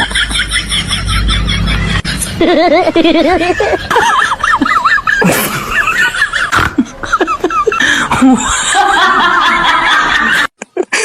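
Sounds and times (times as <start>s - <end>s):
high-pitched giggling: 0.0s - 8.8s.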